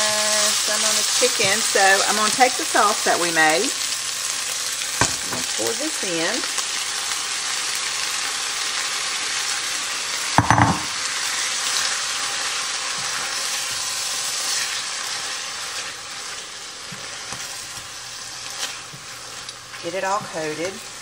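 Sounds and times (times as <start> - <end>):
chicken sizzling in a skillet: 0.0 - 21.0
clatter against the pan: 10.4 - 10.9.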